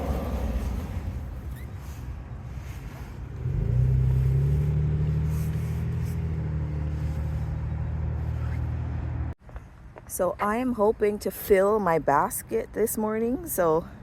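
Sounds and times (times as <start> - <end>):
vehicle engine running: 0.0 - 9.4.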